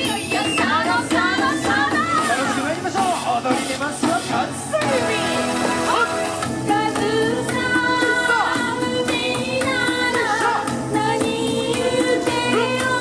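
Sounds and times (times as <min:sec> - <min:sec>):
instrumental accompaniment: 0:00.0 - 0:13.0
person singing with pitch slides: 0:04.1 - 0:13.0.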